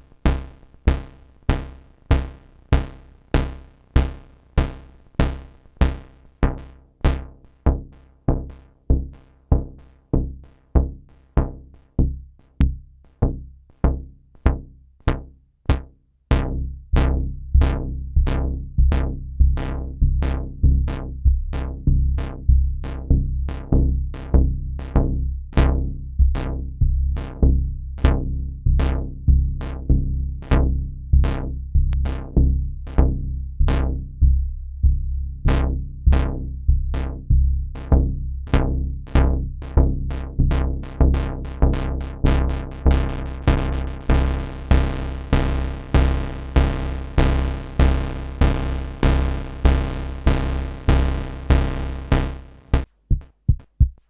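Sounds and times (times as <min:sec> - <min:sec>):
synthesizer bass note pulsing: 0:28.0 - 0:52.8.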